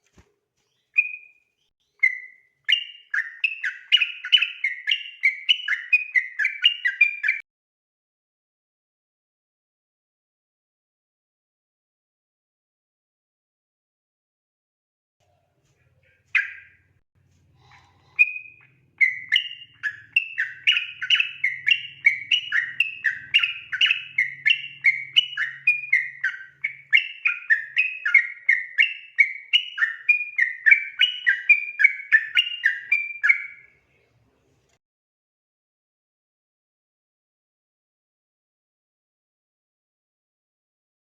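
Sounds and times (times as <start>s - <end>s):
bulbul singing whistled notes: 0.7s - 7.4s, 18.0s - 33.8s.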